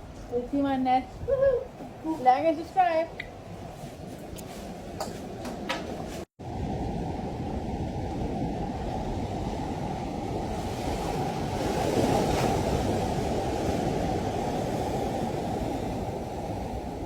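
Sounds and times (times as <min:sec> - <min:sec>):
sea surf washing on shore: 0:06.4 - 0:17.0
wave breaking: 0:06.4 - 0:17.0.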